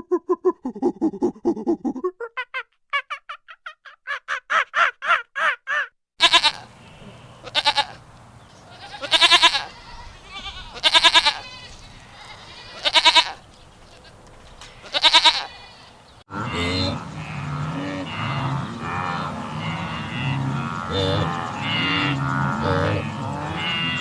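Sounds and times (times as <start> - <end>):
goat bleating: 6.2 - 8.0, 8.7 - 13.4, 14.0 - 24.0.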